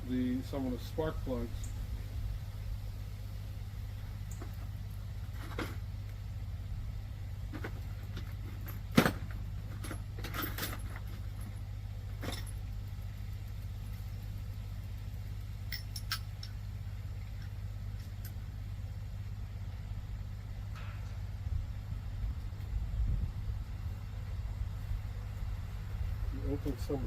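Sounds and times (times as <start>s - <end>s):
steady low hum: 0.0s - 27.0s
metal tool clicks and clinks: 15.6s - 16.6s.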